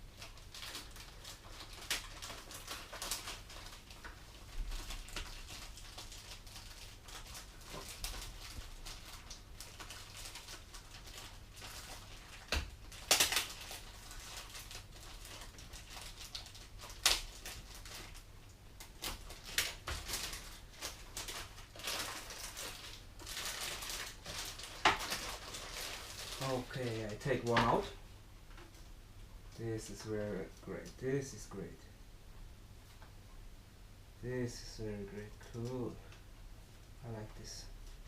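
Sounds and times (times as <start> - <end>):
packaging rustling: 0.0 - 28.0
faint low hum: 0.0 - 38.0.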